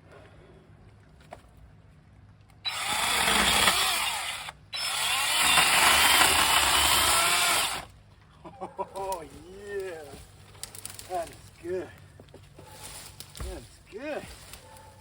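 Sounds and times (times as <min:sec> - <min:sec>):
chainsaw cutting wood: 0:02.7 - 0:07.9.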